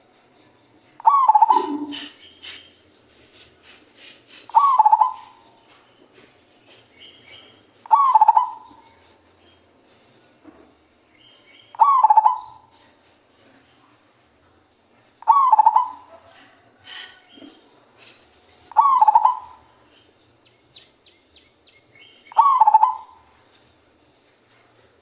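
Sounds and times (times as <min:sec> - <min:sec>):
high chirps of small birds: 0:00.0 - 0:25.0
dove cooing: 0:01.0 - 0:02.6, 0:04.5 - 0:05.5, 0:07.9 - 0:08.9, 0:11.8 - 0:12.7, 0:15.2 - 0:17.5, 0:18.7 - 0:19.8, 0:22.3 - 0:23.4.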